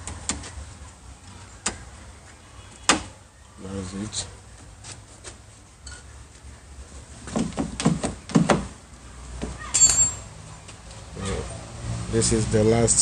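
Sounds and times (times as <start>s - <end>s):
sharp metallic clink: 9.7s - 10.3s.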